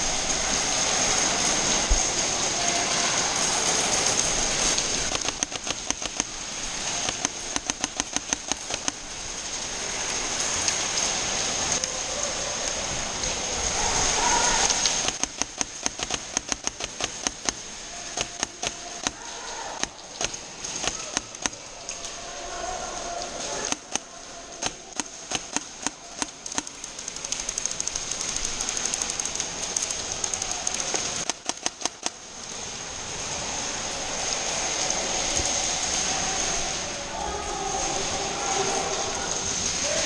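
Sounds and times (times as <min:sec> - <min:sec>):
steady hissing noise: 0:00.0 - 0:40.0.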